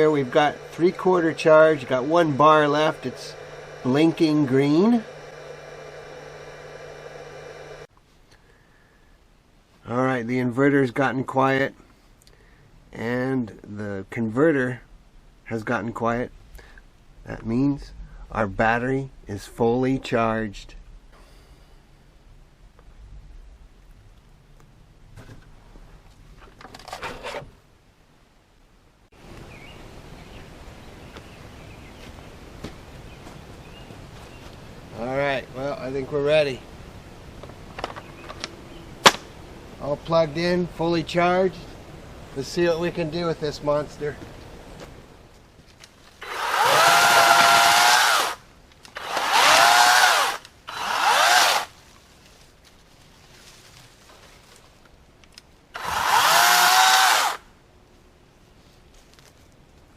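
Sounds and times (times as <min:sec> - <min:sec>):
electric chainsaw whining: 0:00.0 - 0:07.9, 0:46.2 - 0:51.7, 0:55.8 - 0:57.4
outdoor background: 0:00.0 - 0:59.9.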